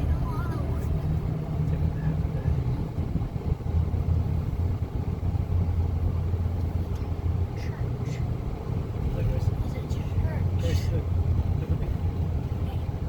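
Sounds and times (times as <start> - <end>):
truck engine and road rumble: 0.0 - 13.0.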